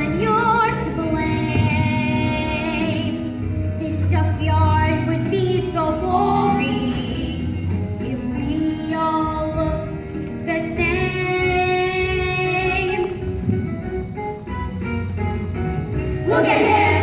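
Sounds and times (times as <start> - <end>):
instrumental accompaniment: 0.0 - 17.0
children singing: 16.3 - 17.0.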